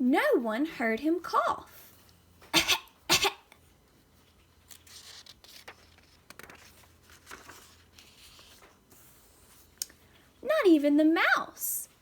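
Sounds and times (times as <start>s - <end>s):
woman coughing: 2.5s - 3.5s
faint paper rustling: 3.6s - 10.4s.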